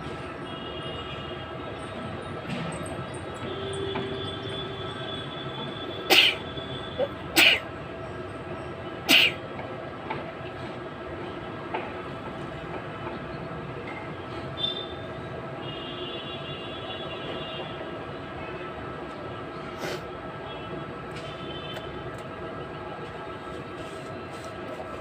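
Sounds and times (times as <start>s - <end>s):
woman forcing sneeze-like bursts: 6.1s - 6.4s, 7.0s - 7.7s, 9.1s - 9.4s.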